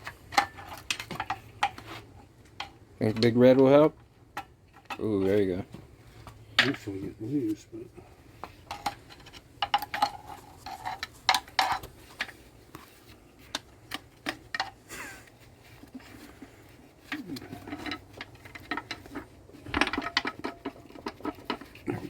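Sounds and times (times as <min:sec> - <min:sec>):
tools clinking on engine parts: 0:17.0 - 0:22.0.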